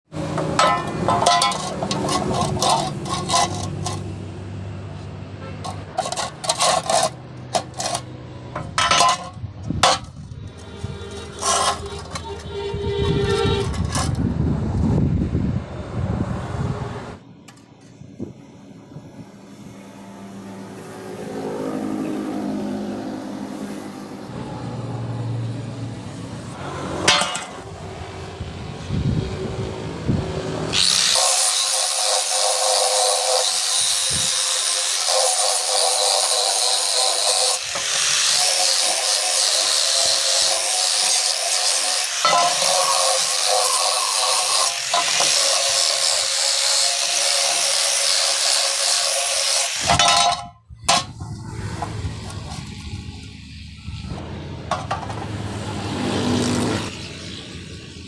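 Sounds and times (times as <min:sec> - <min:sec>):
tool working metal: 0:00.1 - 0:04.2, 0:05.4 - 0:14.4, 0:26.4 - 0:27.8, 0:30.7 - 0:55.8.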